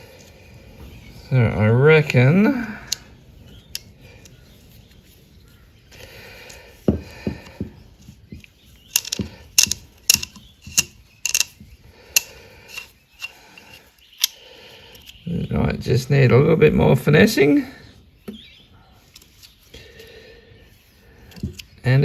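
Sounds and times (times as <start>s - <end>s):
ratchet handle clicking: 8.9s - 11.6s, 12.2s - 14.4s.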